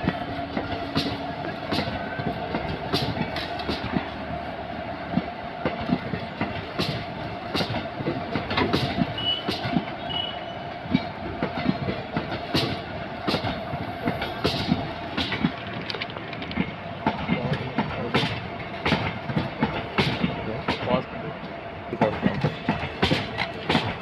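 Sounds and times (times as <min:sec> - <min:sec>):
wheels clicking over rail joints: 0:00.0 - 0:04.1, 0:05.1 - 0:10.0, 0:10.9 - 0:24.0
train rumble and hum: 0:00.0 - 0:24.0
faint train squeals: 0:09.0 - 0:10.8.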